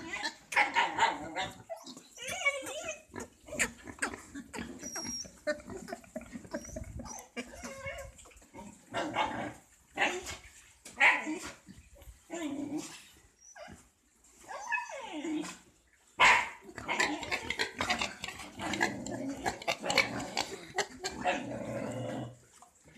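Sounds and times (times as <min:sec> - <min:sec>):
pigs crying harshly: 0:00.0 - 0:08.3, 0:16.2 - 0:22.4.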